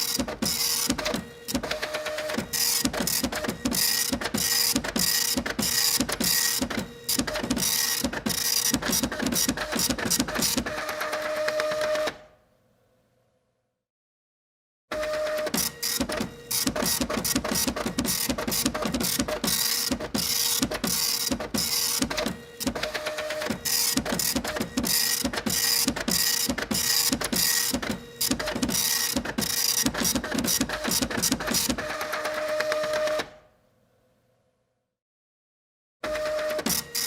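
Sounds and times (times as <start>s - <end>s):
printer clattering: 0.0s - 11.6s, 15.5s - 33.2s.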